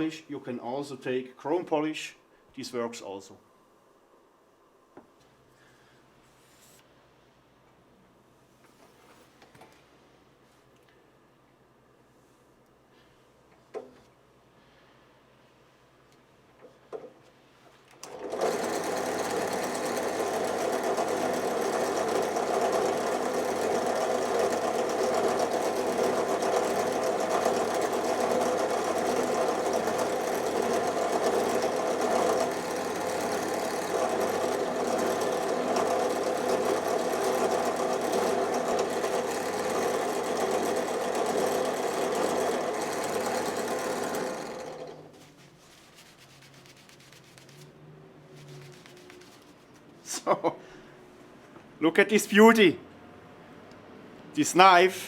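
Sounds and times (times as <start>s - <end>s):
electric buffing wheel running: 18.4s - 45.1s.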